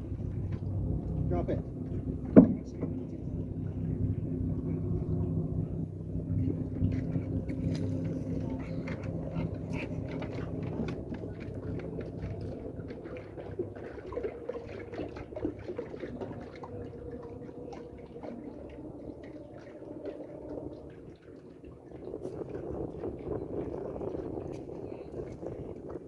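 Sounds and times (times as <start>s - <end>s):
low engine hum: 0.0s - 26.0s
water splashing and dripping: 6.4s - 26.0s.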